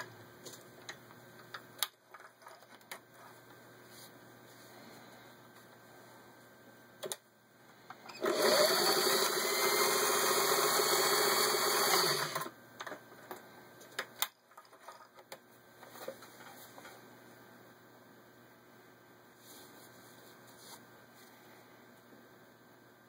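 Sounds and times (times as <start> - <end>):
sewing machine stitching: 8.1 - 12.5.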